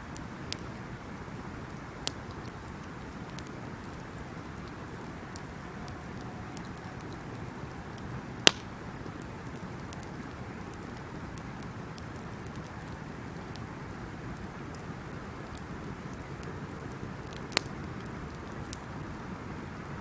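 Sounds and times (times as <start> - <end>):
wood fire crackling: 0.0 - 20.0
sharp pop of fire: 8.4 - 8.7.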